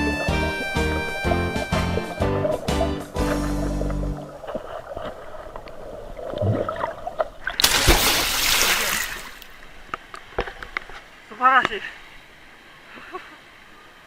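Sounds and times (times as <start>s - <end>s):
background music: 0.0s - 4.4s
river water splashing: 0.0s - 14.0s.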